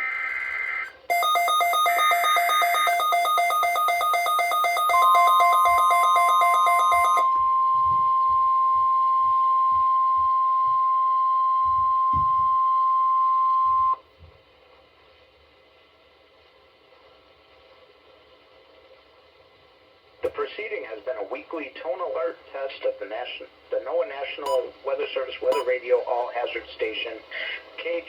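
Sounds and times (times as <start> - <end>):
rapid alarm beeping: 0.0 - 7.4, 25.5 - 25.8
steady warning alarm tone: 0.0 - 8.5, 25.5 - 25.8.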